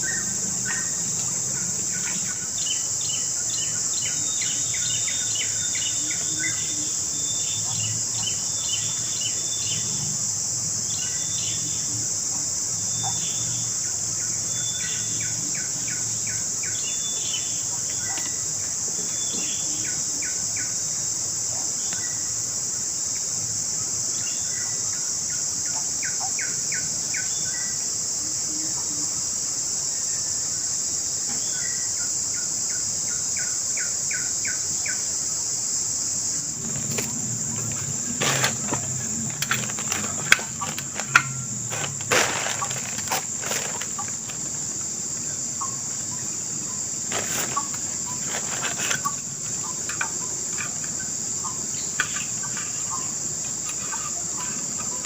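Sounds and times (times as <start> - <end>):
high-pitched insect chorus: 0.0 - 55.0
handling noises: 36.6 - 44.7, 47.0 - 49.2.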